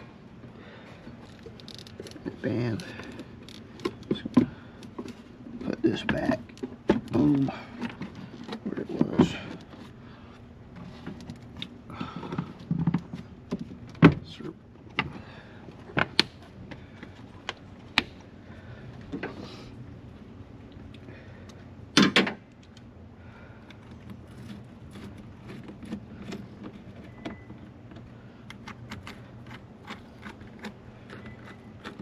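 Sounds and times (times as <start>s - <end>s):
hand tools clicking and tapping: 25.5s - 32.0s.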